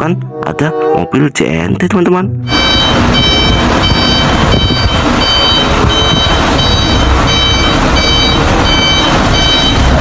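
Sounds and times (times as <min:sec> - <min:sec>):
truck engine rumbling: 0:02.3 - 0:10.0
truck reversing alarm beeping: 0:02.5 - 0:10.0.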